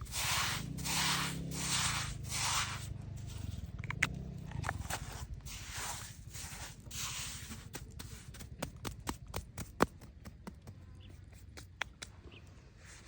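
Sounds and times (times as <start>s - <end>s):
rough scraping strokes: 0.0s - 8.7s
sharp clicks and taps: 8.6s - 12.2s.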